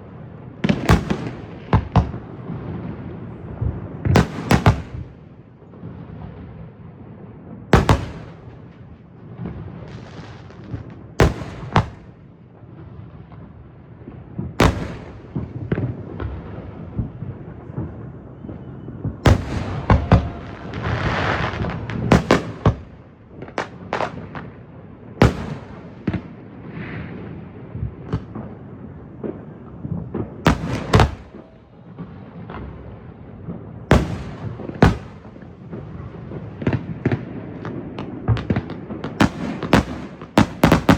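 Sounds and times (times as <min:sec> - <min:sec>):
fireworks crackling: 0:00.0 - 0:06.7, 0:07.6 - 0:40.9
firework shells bursting: 0:19.3 - 0:24.4, 0:30.5 - 0:31.5, 0:33.9 - 0:35.4, 0:38.4 - 0:40.9.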